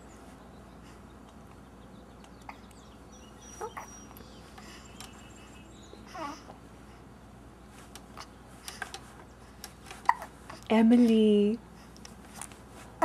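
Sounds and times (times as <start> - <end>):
baby hiccuping: 10.1 - 10.3.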